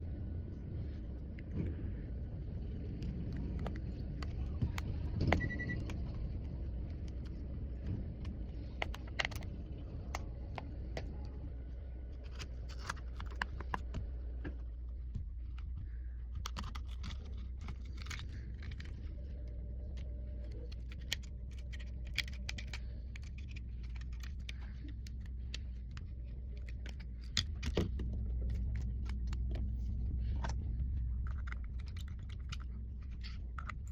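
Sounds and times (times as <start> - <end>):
steady low hum: 0.0 - 33.9.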